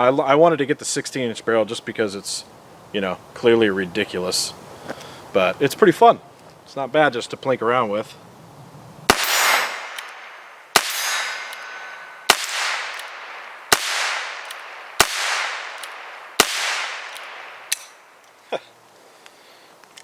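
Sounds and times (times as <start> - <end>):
revolver shots: 9.1 - 18.0.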